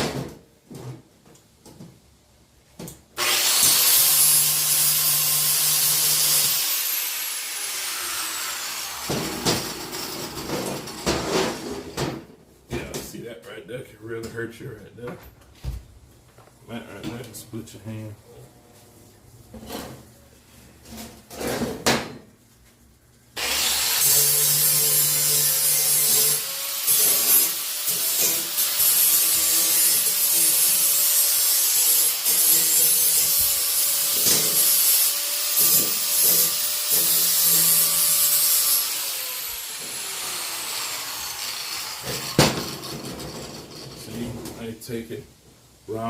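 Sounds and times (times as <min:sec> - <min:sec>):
angle grinder grinding steel: 0:03.2 - 0:10.6, 0:23.4 - 0:44.1
knocks of handling metal: 0:42.1 - 0:44.1.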